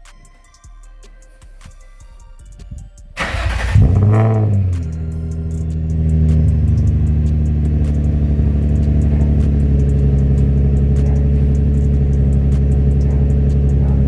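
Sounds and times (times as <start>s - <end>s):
car engine idling: 3.2s - 14.0s.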